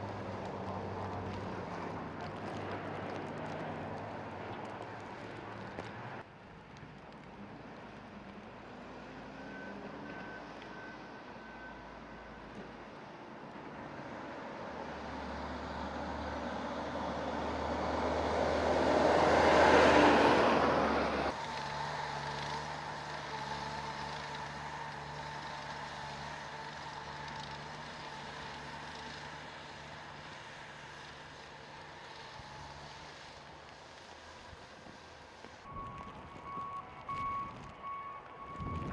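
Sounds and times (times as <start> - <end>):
heavy truck passing: 13.6 - 38.9.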